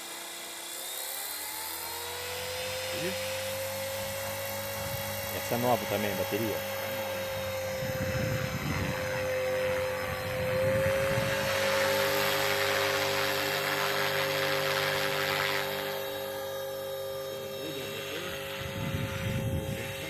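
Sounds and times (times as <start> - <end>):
model helicopter motor whine: 0.0 - 20.0.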